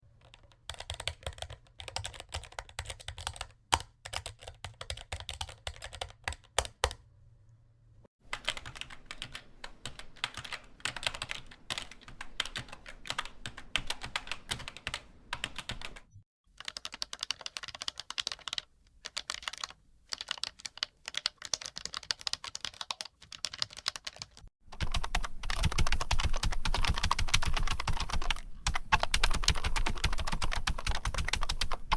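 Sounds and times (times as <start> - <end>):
computer keyboard typing: 0.2 - 7.0, 8.3 - 31.9.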